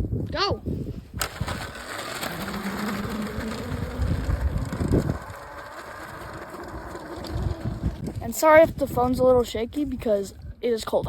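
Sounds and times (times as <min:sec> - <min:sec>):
electric dirt bike motor whining: 0:01.2 - 0:08.2.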